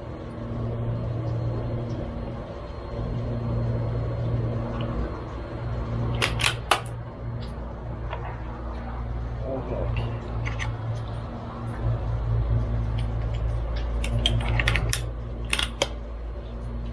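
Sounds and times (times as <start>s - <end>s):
low hum: 0.0s - 16.9s
rifle bolt clicks: 6.2s - 7.0s, 14.6s - 15.9s.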